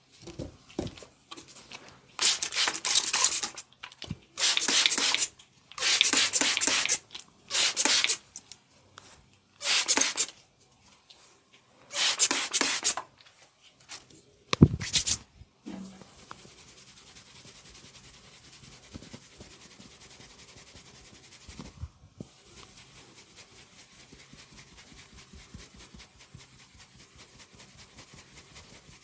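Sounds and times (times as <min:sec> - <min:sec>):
hands rubbing over body: 0:04.4 - 0:08.2.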